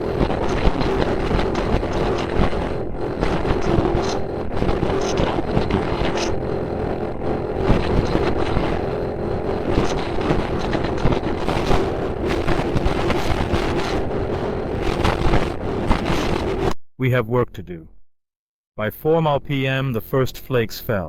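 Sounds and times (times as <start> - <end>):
light crackles: 0.0 - 16.7
low drone: 0.0 - 16.7
steady rumbling: 0.0 - 16.8.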